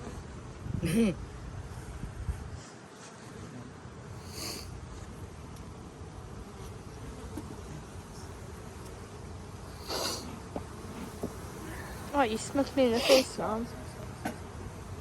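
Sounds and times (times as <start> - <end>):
bee smoker puffs: 1.6 - 5.6, 6.3 - 15.0
honeybees buzzing: 4.2 - 15.0.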